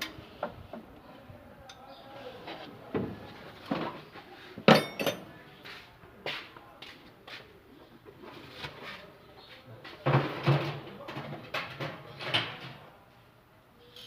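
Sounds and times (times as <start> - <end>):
metal tools clinking: 4.7 - 5.3.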